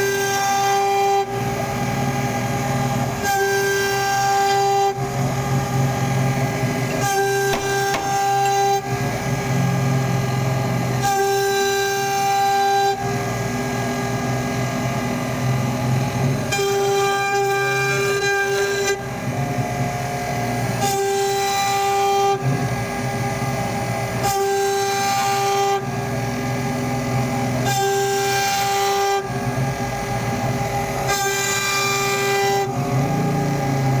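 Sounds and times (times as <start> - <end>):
rough noisy machine cutting: 0.0 - 34.0
router machine whine: 0.0 - 34.0.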